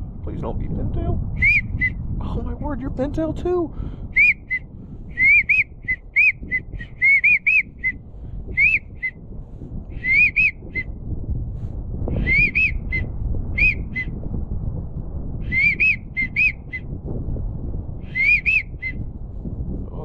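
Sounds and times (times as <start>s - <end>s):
low wind rumble: 0.0s - 20.0s
duck whistle call: 1.4s - 1.9s, 4.2s - 4.6s, 5.2s - 8.0s, 8.6s - 9.2s, 10.0s - 10.8s, 12.2s - 13.0s, 13.6s - 14.1s, 15.5s - 16.9s, 18.1s - 19.0s.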